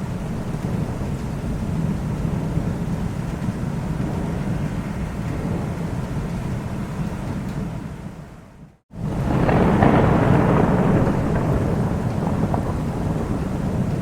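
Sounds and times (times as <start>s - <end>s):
low rumble of thunder: 0.0s - 14.0s
rain hissing: 0.0s - 14.0s.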